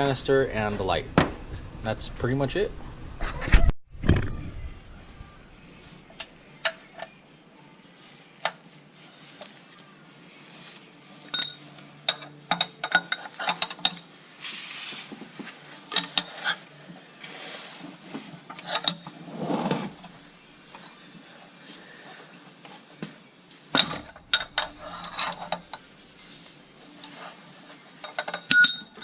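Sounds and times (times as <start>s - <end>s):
metal tools clinking: 11.3s - 14.0s, 18.5s - 19.1s, 23.8s - 25.8s, 28.0s - 29.0s.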